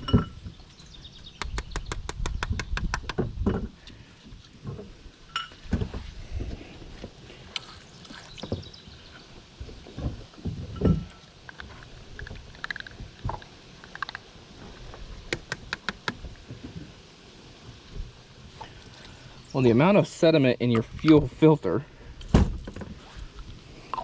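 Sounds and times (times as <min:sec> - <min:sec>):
sharp clicks: 0:01.4 - 0:03.2
hands knocking and bumping: 0:01.4 - 0:03.8.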